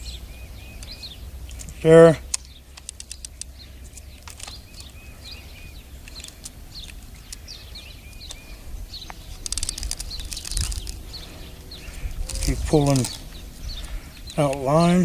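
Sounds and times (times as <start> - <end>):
small birds chirping: 0.0 - 15.0
light clicks: 0.8 - 5.0, 6.0 - 11.1.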